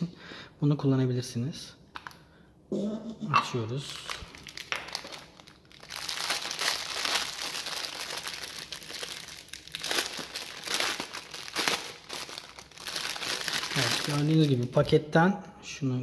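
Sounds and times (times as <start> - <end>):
plastic packaging crinkling: 3.8 - 14.8.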